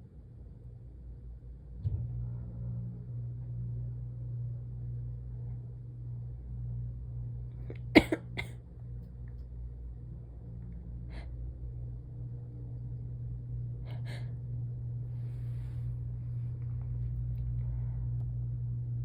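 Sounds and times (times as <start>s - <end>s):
steady low hum: 0.0s - 19.0s
person sneezing: 8.0s - 8.5s
person breathing: 13.8s - 14.4s, 15.1s - 16.5s.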